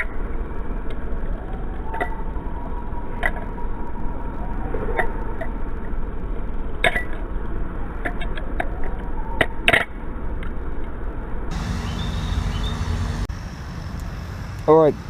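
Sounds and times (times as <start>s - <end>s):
low background rumble: 10.0s - 14.6s.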